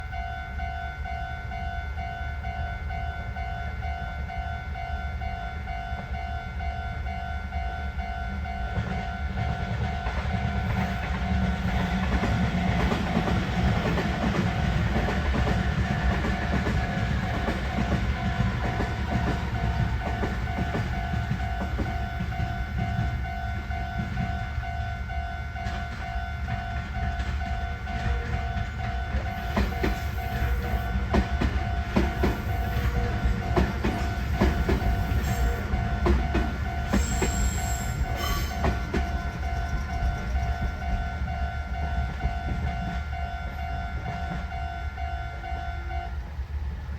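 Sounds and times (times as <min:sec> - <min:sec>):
train wheels clattering over rail joints: 0:08.7 - 0:24.3, 0:25.6 - 0:41.1.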